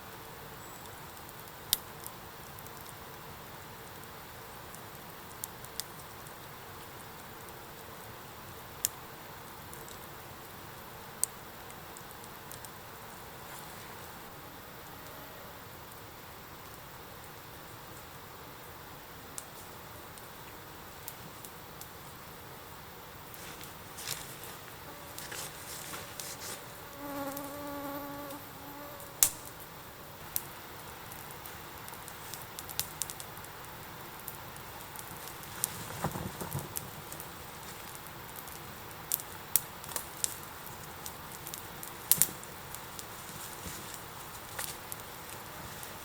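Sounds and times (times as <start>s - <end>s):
flying insect buzzing: 23.4s - 29.6s.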